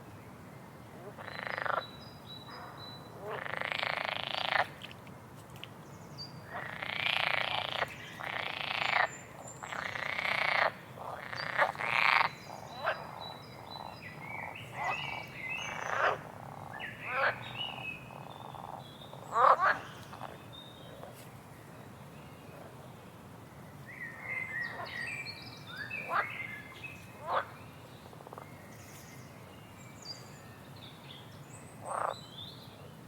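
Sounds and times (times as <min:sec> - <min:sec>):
frogs croaking: 0:01.0 - 0:04.8, 0:06.5 - 0:21.1, 0:25.8 - 0:28.6, 0:31.8 - 0:32.2.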